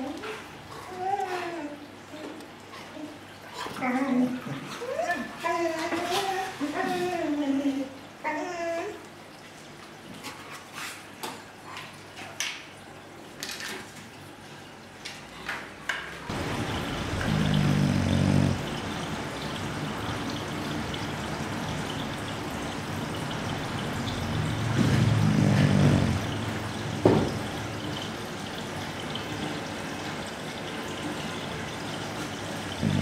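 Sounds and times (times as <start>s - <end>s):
dog snoring: 16.9s - 18.8s, 24.7s - 26.4s, 32.8s - 33.0s.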